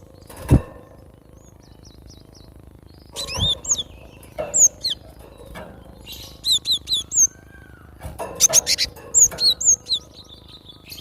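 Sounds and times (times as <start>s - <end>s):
bird chirping sharply: 1.7s - 5.0s, 5.8s - 7.8s, 8.4s - 11.0s.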